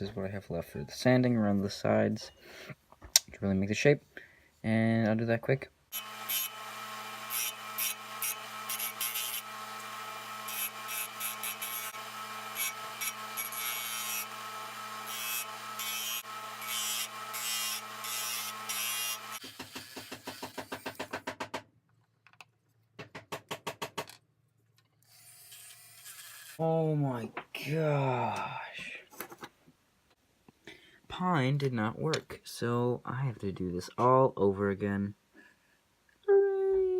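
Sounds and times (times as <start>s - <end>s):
power sander humming: 5.9s - 20.0s.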